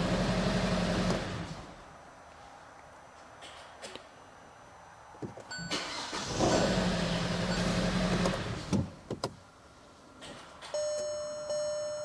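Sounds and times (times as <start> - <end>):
engine cranking and starting: 5.7 - 8.8.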